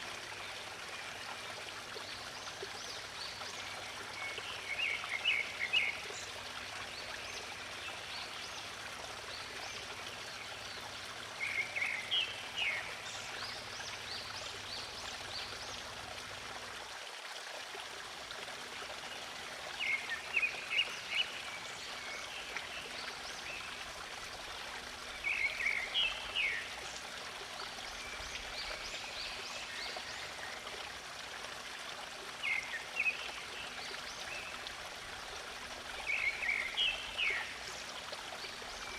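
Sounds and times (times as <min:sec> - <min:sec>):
stream flowing: 0:00.0 - 0:38.9.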